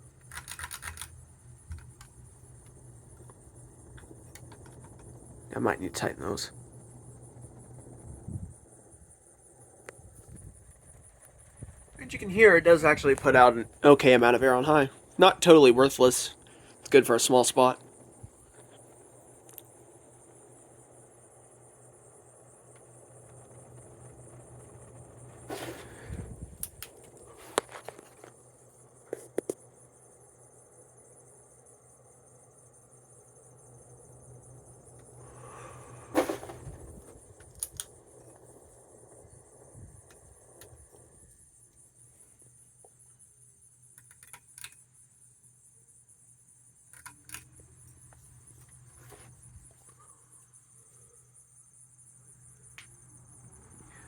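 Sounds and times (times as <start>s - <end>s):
ceiling fan clicks and ticks: 0.0s - 8.1s
ceiling fan humming: 0.0s - 43.4s.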